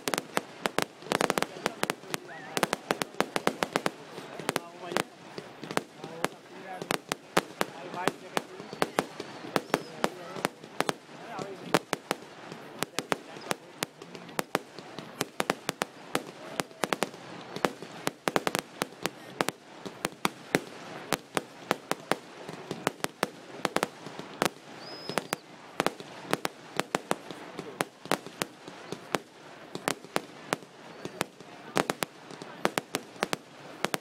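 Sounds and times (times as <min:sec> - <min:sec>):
crowd murmuring: 0:00.0 - 0:20.1, 0:20.7 - 0:33.9
fireworks bangs and cracks: 0:00.0 - 0:34.0
high firework whistle: 0:08.6 - 0:10.1, 0:24.7 - 0:25.5.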